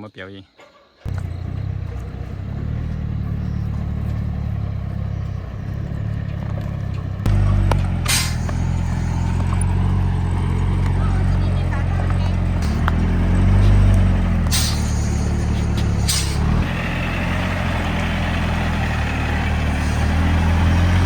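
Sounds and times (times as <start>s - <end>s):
truck engine running under load: 1.1s - 21.0s
short sharp hiss: 14.5s - 15.3s.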